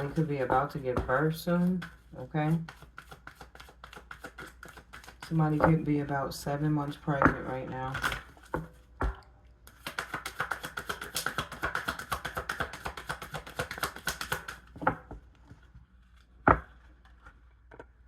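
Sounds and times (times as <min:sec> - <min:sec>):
cards being shuffled: 0:00.0 - 0:05.8, 0:09.7 - 0:15.0
cards tapping: 0:00.0 - 0:05.8, 0:07.2 - 0:15.1.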